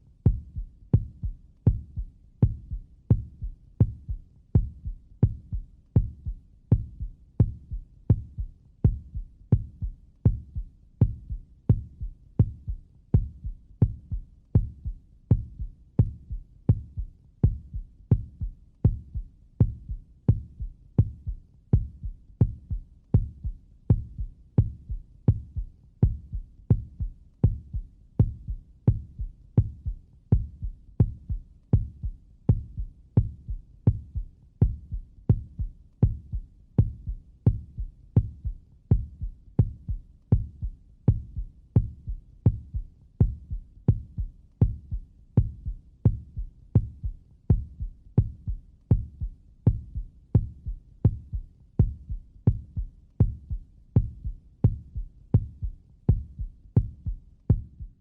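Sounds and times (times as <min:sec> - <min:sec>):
heartbeat thumps: 0:00.3 - 0:58.0.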